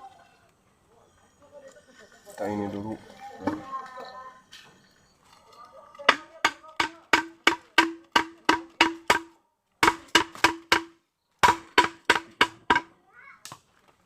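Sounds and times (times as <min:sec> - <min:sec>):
rapid knocks with ringing tone: 0:06.0 - 0:12.9.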